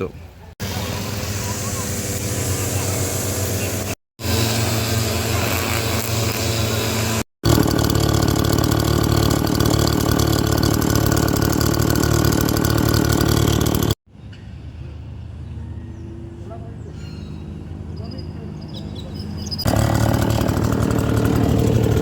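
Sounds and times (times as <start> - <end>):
engine running: 0.6 - 14.0, 19.6 - 22.0.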